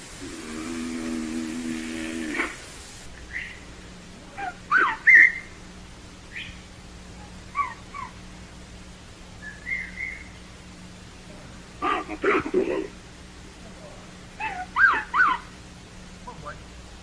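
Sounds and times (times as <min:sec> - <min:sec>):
whistle-like calls and squeaks: 0:04.7 - 0:05.5, 0:09.4 - 0:10.3.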